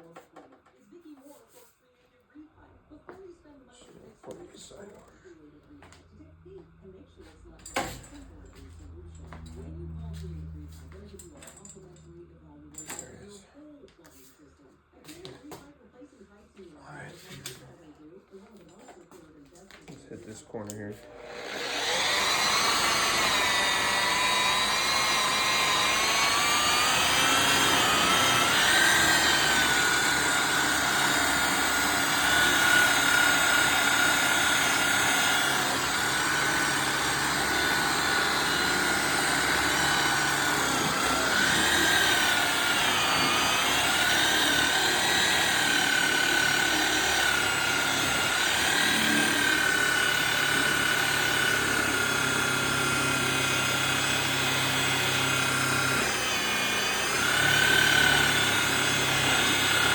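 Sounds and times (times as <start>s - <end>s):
electric buffer motor whining: 4.1s - 13.4s, 20.2s - 59.9s.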